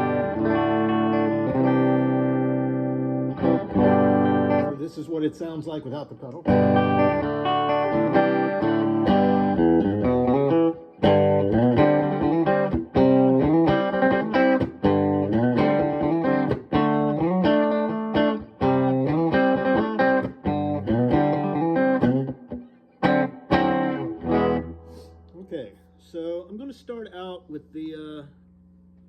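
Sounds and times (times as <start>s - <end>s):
clean electric guitar chords and riffs: 0.0s - 4.8s, 6.4s - 25.5s.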